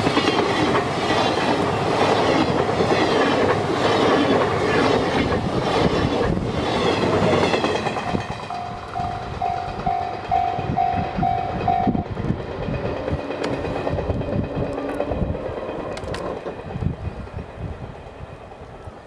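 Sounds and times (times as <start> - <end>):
train wheels on rails: 0.0 - 19.0
level crossing warning bell: 8.3 - 12.1.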